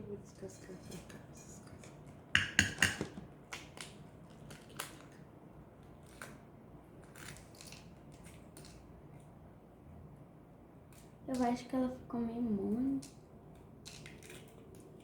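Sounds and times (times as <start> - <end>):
egg shell cracking: 1.8 - 8.9, 13.0 - 15.0.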